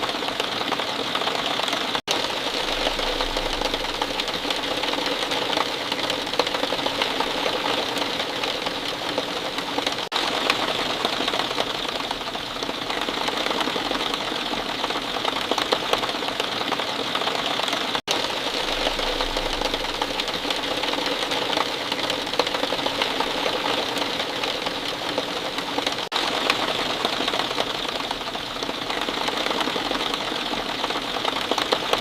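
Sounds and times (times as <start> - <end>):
steady rainfall: 0.0 - 32.0.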